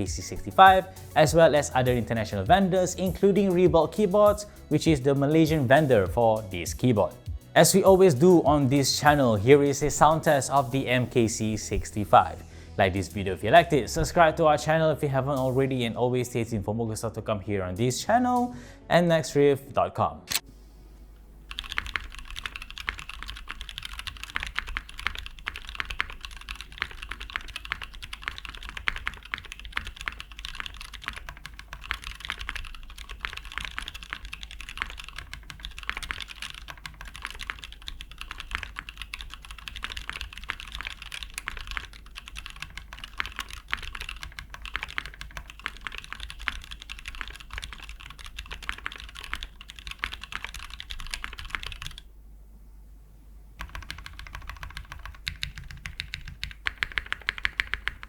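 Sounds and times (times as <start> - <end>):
mechanical keyboard typing: 21.5 - 52.1, 53.6 - 58.0.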